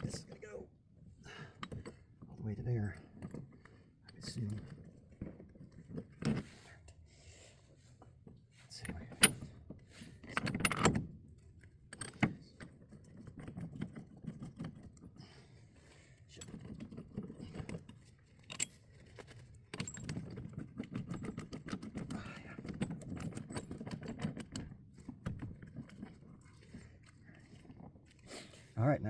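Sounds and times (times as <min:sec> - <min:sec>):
metal tools clinking and rattling: 0:01.4 - 0:06.5, 0:08.6 - 0:09.6, 0:10.2 - 0:11.0, 0:11.6 - 0:15.2, 0:16.2 - 0:28.8.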